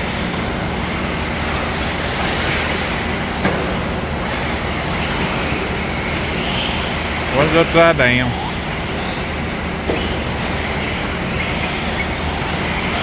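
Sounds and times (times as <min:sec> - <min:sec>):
background din: 0:07.3 - 0:08.5.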